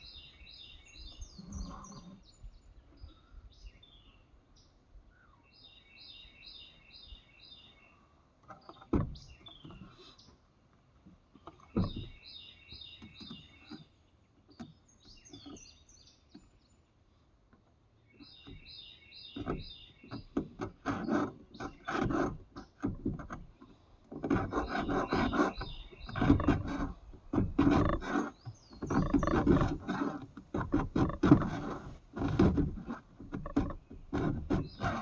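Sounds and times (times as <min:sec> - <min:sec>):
bird chirping: 0:00.0 - 0:10.4, 0:11.4 - 0:17.0, 0:17.9 - 0:27.0, 0:27.7 - 0:30.1, 0:33.3 - 0:35.0
file rasping on chainsaw chain: 0:20.6 - 0:23.4, 0:24.2 - 0:33.0, 0:34.1 - 0:35.0.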